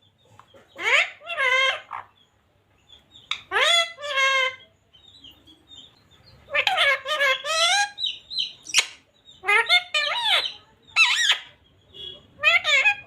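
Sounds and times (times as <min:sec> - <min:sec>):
parrot calling loudly: 0:00.8 - 0:02.1, 0:03.3 - 0:04.6, 0:06.5 - 0:11.5, 0:12.4 - 0:13.0.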